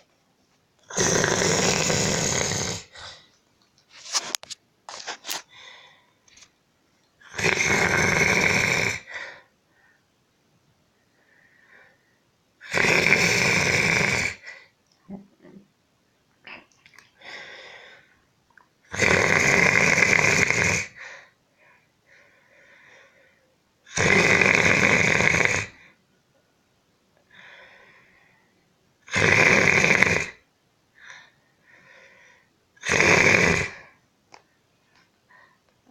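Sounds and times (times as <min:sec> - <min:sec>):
man snoring: 0:00.9 - 0:02.9, 0:07.3 - 0:09.1, 0:12.6 - 0:14.4, 0:18.9 - 0:21.0, 0:23.9 - 0:25.8, 0:29.1 - 0:30.4, 0:32.8 - 0:33.9
soft breathing: 0:05.0 - 0:06.5, 0:34.4 - 0:35.9.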